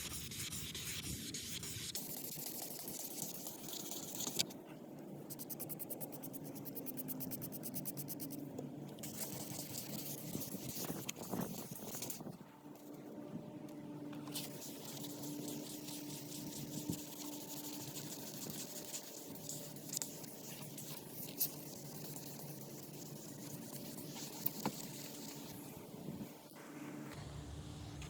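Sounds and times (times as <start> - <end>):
sandpaper rubbing on plastic: 0.0 - 4.4, 9.0 - 12.2, 14.3 - 25.6.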